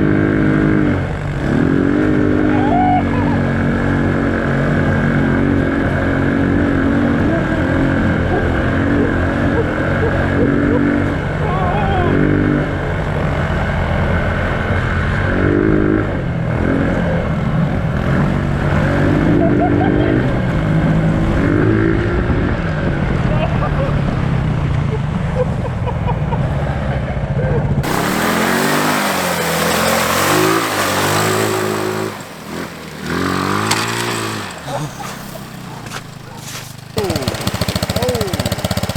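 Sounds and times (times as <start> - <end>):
small engine revving: 0.0 - 22.6, 27.8 - 38.9
small petrol engine running: 27.7 - 38.9.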